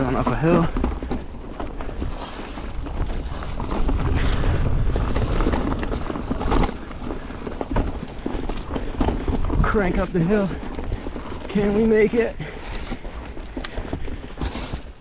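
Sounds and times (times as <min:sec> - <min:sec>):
wind rumble on microphone: 0:00.0 - 0:11.8
bike rattling and knocking: 0:00.0 - 0:15.0
tyres crunching over rock: 0:00.0 - 0:15.0.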